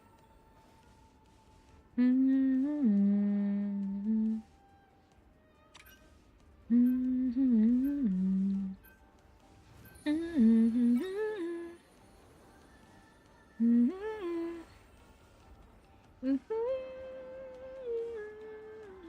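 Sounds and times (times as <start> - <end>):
person humming: 2.0 - 4.6, 6.7 - 8.8, 13.5 - 14.8, 16.2 - 19.0.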